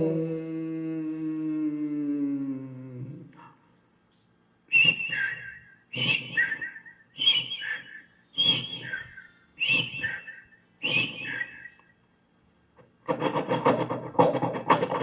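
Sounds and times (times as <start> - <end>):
person whistling two-note call: 4.7 - 11.9.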